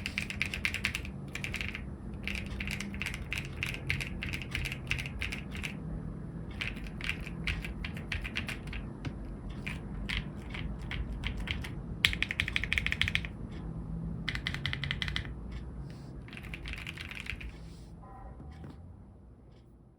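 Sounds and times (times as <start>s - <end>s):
mechanical keyboard typing: 0.0s - 5.8s, 6.4s - 13.4s, 14.2s - 15.4s, 16.2s - 17.6s.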